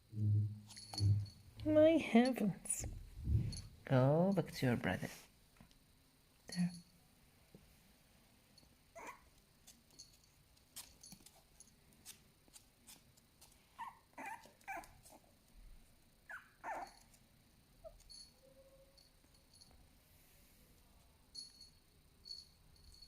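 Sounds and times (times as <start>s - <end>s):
puppy whimpering and yipping: 9.0s - 9.2s, 13.8s - 15.2s, 16.3s - 17.1s.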